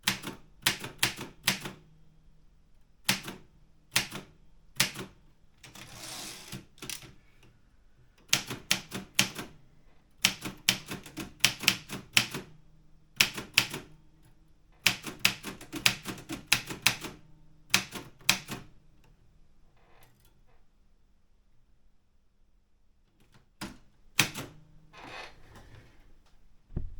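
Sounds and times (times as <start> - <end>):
typewriter keystrokes: 0.0 - 1.8, 3.0 - 7.2, 8.2 - 9.6, 10.2 - 12.5, 13.2 - 13.9, 14.8 - 18.7, 23.2 - 24.6.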